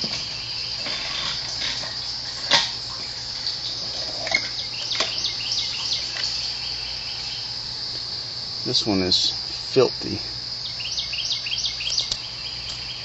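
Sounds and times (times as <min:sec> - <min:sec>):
high-pitched insect chorus: 0:00.0 - 0:13.0.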